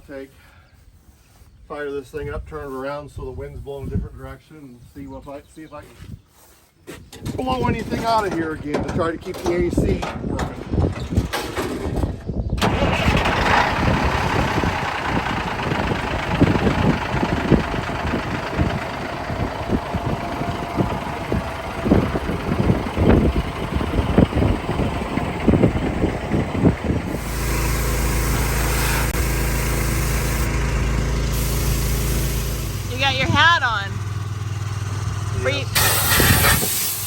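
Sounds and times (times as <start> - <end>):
engine knocking: 12.6 - 36.8
low engine hum: 12.6 - 37.0
vehicle engine roaring: 12.6 - 37.0.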